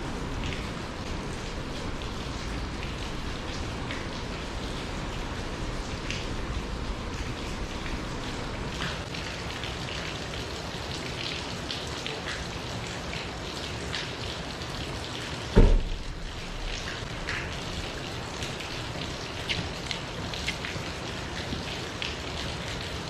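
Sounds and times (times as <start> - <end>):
loud low thump: 15.6 - 16.1.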